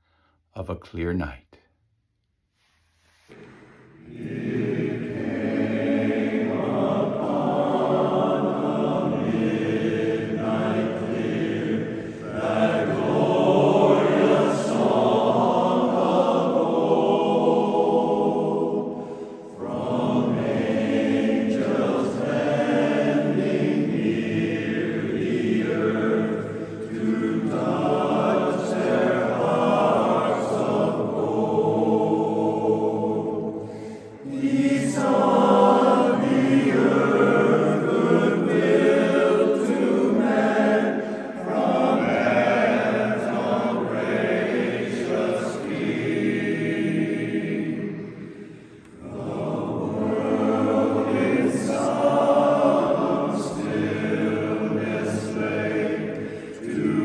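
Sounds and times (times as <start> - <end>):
barbershop chorus singing a cappella: 3.3 - 57.0.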